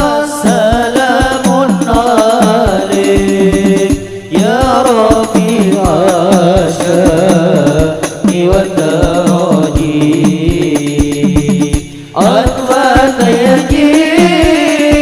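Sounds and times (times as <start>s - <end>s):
solo devotional singing: 0.0s - 15.0s
steady drum beat: 0.0s - 15.0s.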